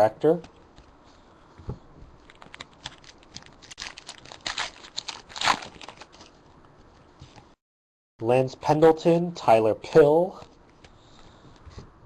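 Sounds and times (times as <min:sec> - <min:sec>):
foil wrapper crinkling: 0:02.2 - 0:06.4.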